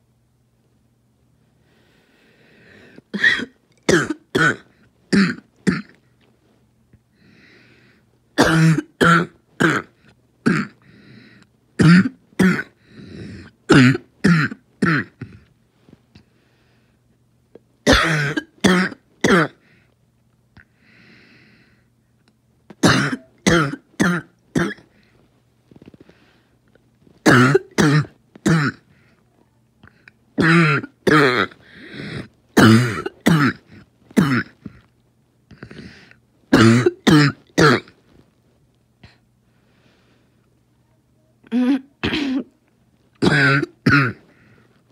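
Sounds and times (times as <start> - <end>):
person coughing sharply: 3.2 - 6.0, 8.4 - 10.8, 11.8 - 12.8, 13.4 - 15.4, 17.9 - 19.6, 22.8 - 24.9, 27.2 - 28.9, 30.4 - 34.8, 36.5 - 38.0, 41.5 - 42.5, 43.2 - 44.3.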